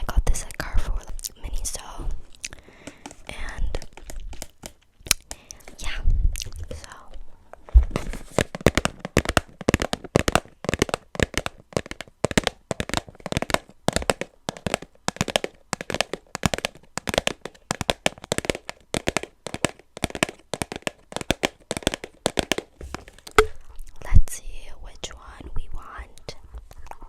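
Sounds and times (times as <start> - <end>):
tapping on a box: 2.8 - 5.3, 8.0 - 23.6.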